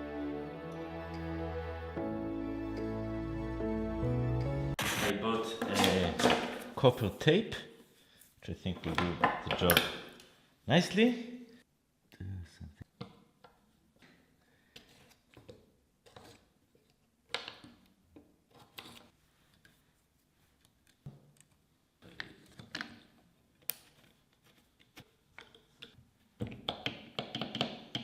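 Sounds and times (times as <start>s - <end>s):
tape rustling and scraping: 18.5s - 26.0s.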